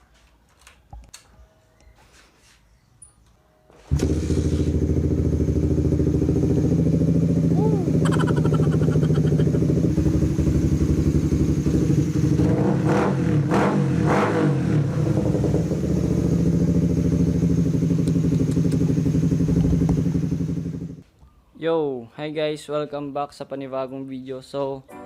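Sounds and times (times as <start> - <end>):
motorcycle engine running and revving: 3.9 - 21.0.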